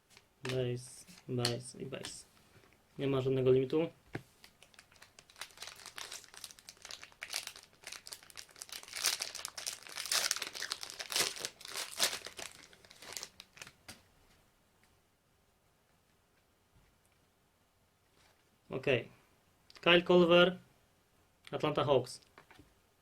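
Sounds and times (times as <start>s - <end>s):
plastic wrapper crinkling: 4.4s - 14.0s.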